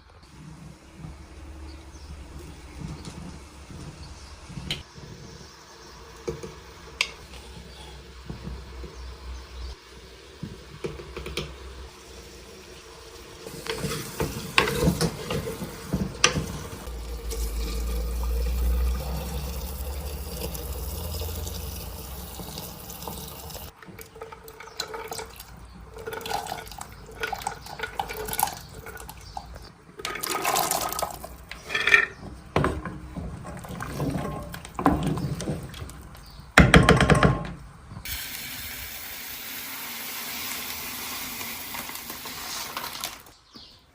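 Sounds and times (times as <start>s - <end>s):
water pouring and sloshing: 12.8s - 36.6s, 39.6s - 43.4s
handling knocks and clatter: 23.7s - 38.0s.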